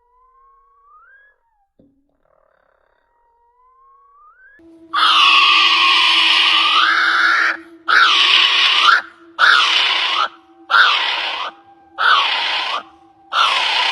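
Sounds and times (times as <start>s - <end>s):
bird screeching harshly: 5.0s - 13.9s.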